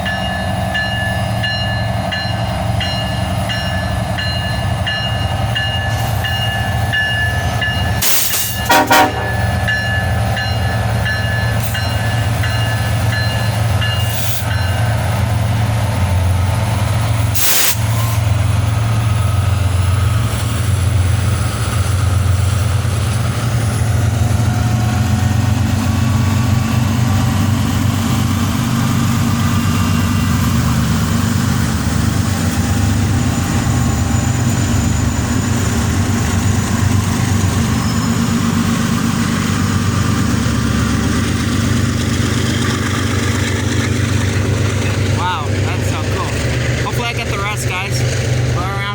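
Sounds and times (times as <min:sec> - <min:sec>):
diesel locomotive drone: 0:00.0 - 0:48.9
locomotive horn: 0:08.0 - 0:09.7.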